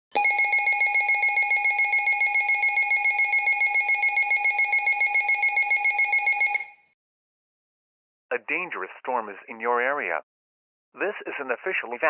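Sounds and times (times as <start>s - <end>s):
pulsing electronic alarm: 0.2s - 6.9s.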